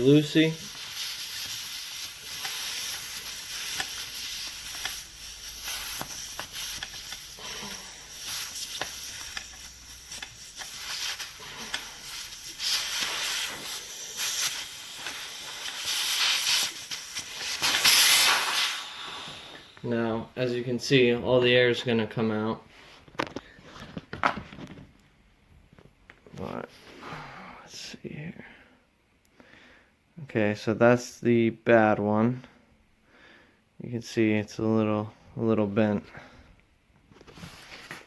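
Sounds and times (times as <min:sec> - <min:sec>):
air hissing out of tyre valve: 0:00.0 - 0:19.9.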